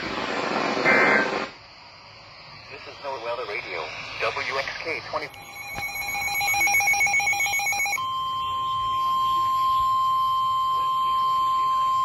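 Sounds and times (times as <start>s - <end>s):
warbling electronic tone: 5.3s - 8.7s
steady high alarm tone: 5.3s - 12.0s.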